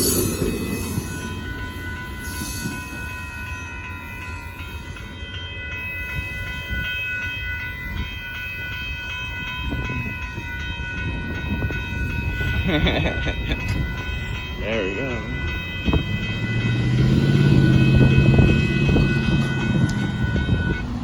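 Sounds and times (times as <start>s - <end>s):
high-pitched ringing tone: 0.0s - 20.9s
train cars rumbling: 0.0s - 21.0s.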